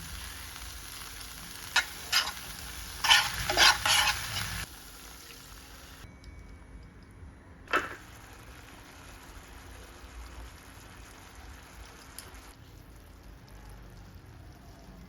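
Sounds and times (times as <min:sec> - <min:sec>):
food sizzling in hot oil: 0:00.0 - 0:06.1, 0:07.7 - 0:14.8
spatula scraping and knocking pan: 0:01.8 - 0:02.4, 0:03.0 - 0:04.6.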